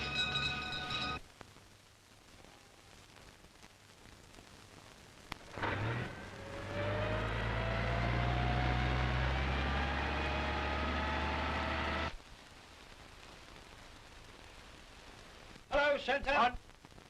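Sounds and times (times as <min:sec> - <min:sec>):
engine whine rising in pitch: 0:05.5 - 0:12.2
aircraft engines droning: 0:05.6 - 0:12.1.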